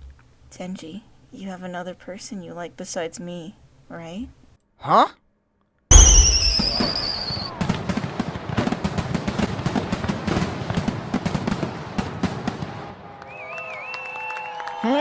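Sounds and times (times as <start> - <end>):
low thuds: 5.9 - 7.2
falling firework whistle: 5.9 - 7.8, 13.2 - 14.7
fireworks crackling and popping: 5.9 - 12.8.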